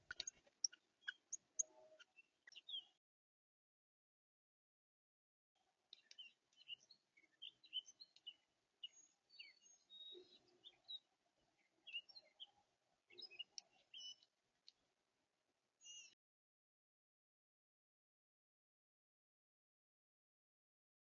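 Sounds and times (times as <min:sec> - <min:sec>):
songbirds chirping: 0:00.0 - 0:03.0, 0:05.6 - 0:15.0, 0:15.8 - 0:16.2.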